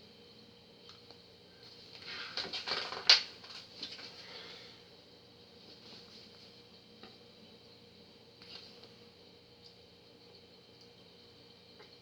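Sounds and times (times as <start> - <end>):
rustling and crackling handling: 1.8 - 4.3.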